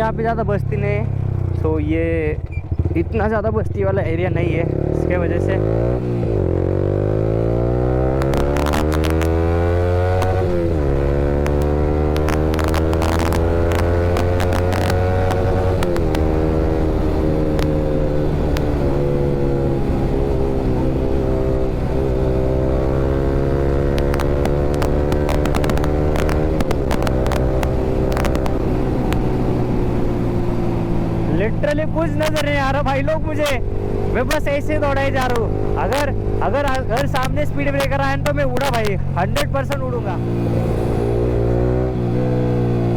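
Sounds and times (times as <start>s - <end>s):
motorcycle engine accelerating: 0.0s - 42.9s
sharp clicks: 8.2s - 9.4s, 10.1s - 18.9s, 23.8s - 29.4s.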